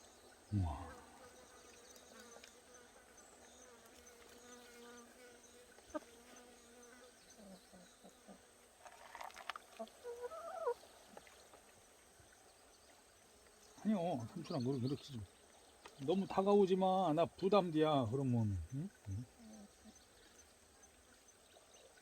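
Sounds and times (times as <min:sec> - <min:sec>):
fly buzzing: 0:00.5 - 0:09.4.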